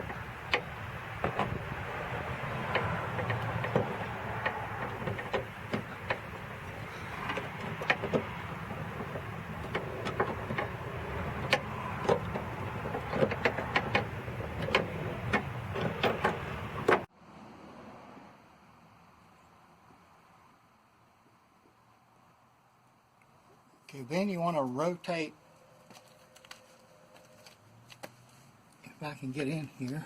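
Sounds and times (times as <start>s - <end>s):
hand tool clicking on metal bolt: 0.0s - 17.1s.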